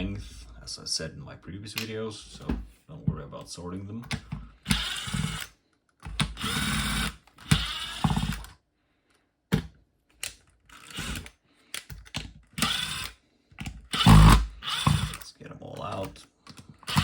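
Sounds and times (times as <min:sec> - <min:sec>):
power driver whirring: 0:04.6 - 0:05.5, 0:06.2 - 0:08.5, 0:10.7 - 0:11.9, 0:12.6 - 0:15.2, 0:16.7 - 0:17.0.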